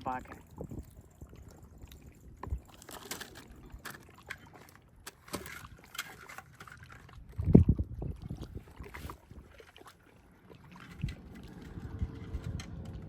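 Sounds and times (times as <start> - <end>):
water sloshing and splashing: 0.0 - 13.0.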